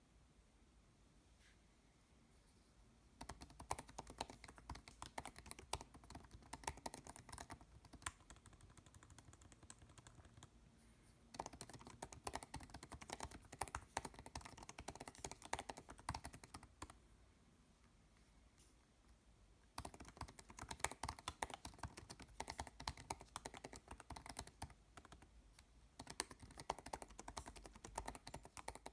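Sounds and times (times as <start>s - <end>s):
laptop keyboard typing: 3.2s - 10.5s, 11.3s - 17.0s, 19.8s - 28.9s.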